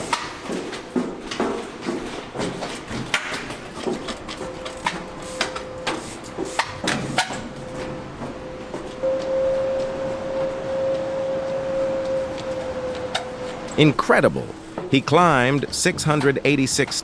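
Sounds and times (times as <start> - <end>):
sharp knocks and clicks: 0.0 - 7.5
steady hum: 0.0 - 17.0.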